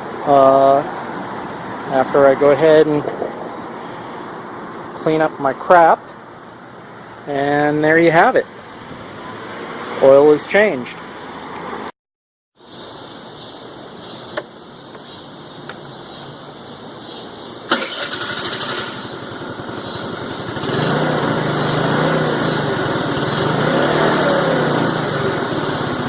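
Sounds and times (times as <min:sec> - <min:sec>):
sharp click: 0:14.3 - 0:15.0
scooter engine revving: 0:17.7 - 0:26.0.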